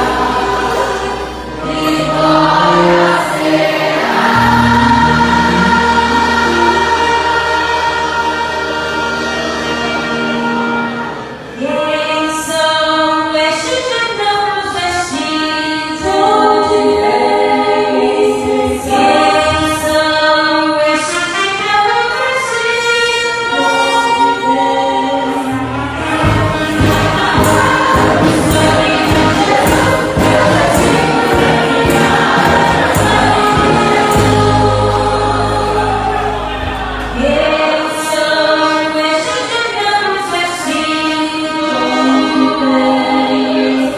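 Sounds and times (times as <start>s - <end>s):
low accompaniment: 0.0s - 11.7s, 25.5s - 39.0s
choir singing a hymn: 0.0s - 43.9s.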